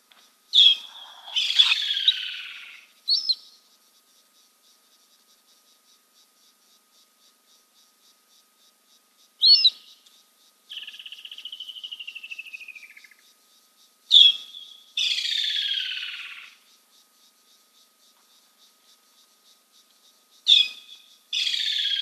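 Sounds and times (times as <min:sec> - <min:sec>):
crickets chirping: 0:00.0 - 0:22.0
bird trilled whistle: 0:00.5 - 0:03.5, 0:09.4 - 0:09.9, 0:14.1 - 0:16.2, 0:20.5 - 0:22.0.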